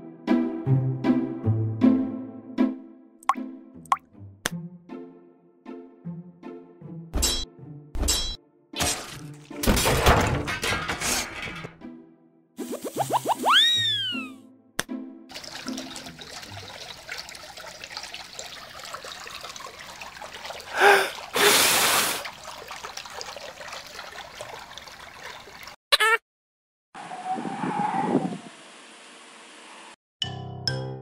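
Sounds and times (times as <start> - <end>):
water trickling and splashing: 8.8 - 9.6, 15.3 - 25.8
wavering squeaky tone: 13.2 - 14.4
splash-like rush: 20.0 - 25.8.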